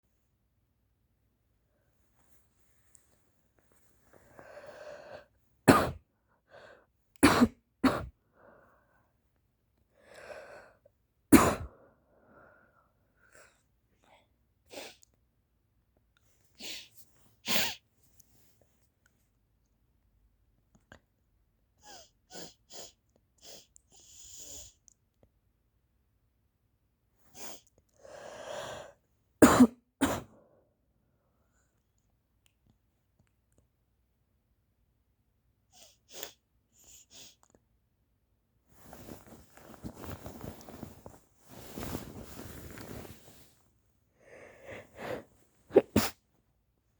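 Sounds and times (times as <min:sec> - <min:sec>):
person sneezing: 0:11.3 - 0:11.8, 0:17.5 - 0:17.8, 0:29.4 - 0:30.4, 0:44.6 - 0:46.2
person inhaling raggedly: 0:44.2 - 0:45.3.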